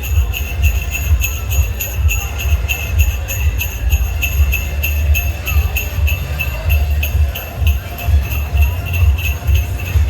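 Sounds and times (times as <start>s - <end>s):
heavy low bass: 0.0s - 10.0s
jingle bells shaken on a beat: 0.0s - 10.0s.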